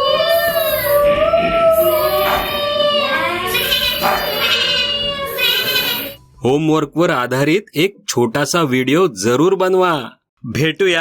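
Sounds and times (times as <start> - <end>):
children imitating village sounds: 0.0 - 6.2.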